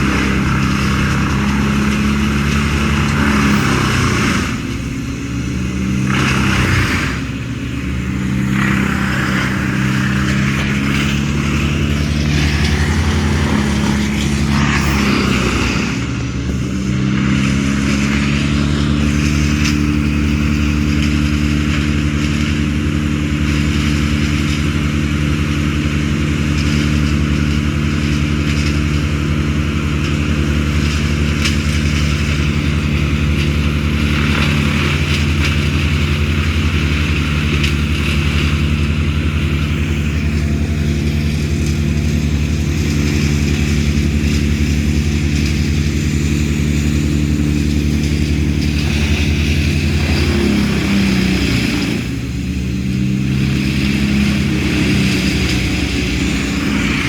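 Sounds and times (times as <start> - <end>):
large engine running: 0.0 - 57.0.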